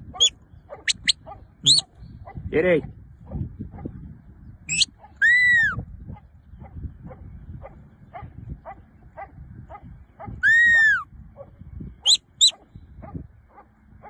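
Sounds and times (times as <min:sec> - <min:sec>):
dog barking: 0:00.1 - 0:02.5, 0:06.1 - 0:11.6, 0:12.4 - 0:13.8
shepherd's whistle: 0:00.9 - 0:01.8, 0:04.7 - 0:05.8, 0:10.4 - 0:11.0, 0:12.0 - 0:12.6.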